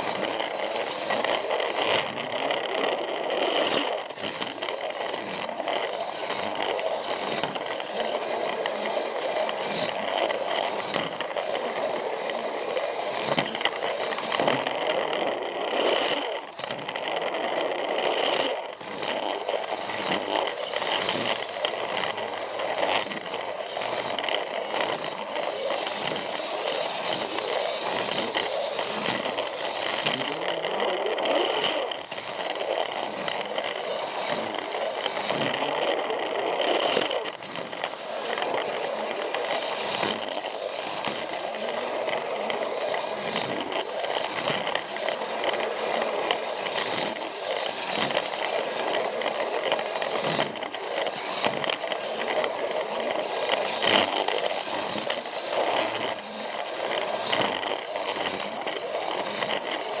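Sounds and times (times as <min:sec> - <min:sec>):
plastic wheels rattling on track: 0:00.0 - 1:00.0
toy train motor whirring: 0:00.0 - 1:00.0.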